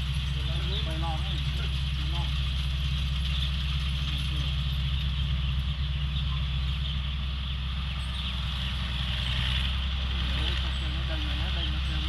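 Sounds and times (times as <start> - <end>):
combine harvester engine drone: 0.0 - 12.0.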